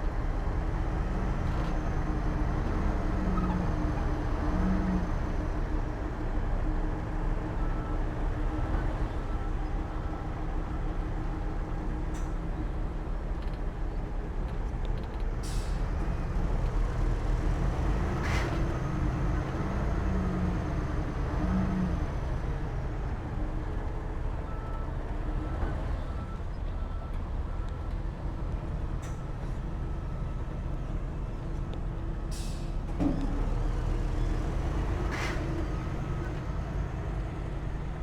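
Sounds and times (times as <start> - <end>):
air brake hisses: 32.3 - 32.8, 35.1 - 35.5.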